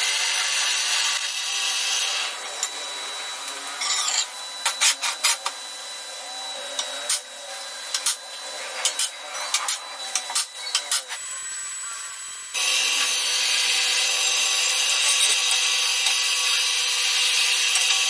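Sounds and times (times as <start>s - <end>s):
rasping tool: 12.6s - 18.0s.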